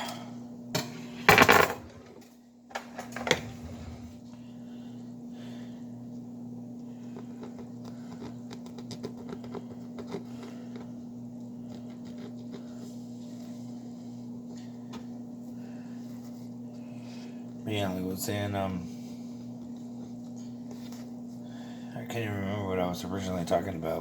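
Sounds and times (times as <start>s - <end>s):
low hum: 0.0s - 21.9s
knife cutting crusty bread: 11.6s - 12.8s.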